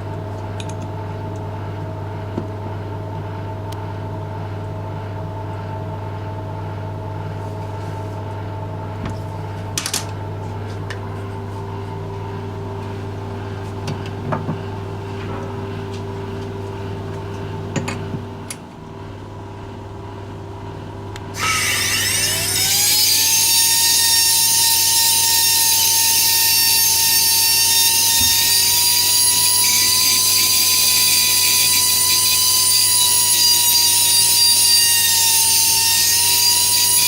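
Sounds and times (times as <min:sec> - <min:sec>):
workshop machine humming: 0:00.0 - 0:37.0
power tool hiss and whine: 0:21.4 - 0:37.0.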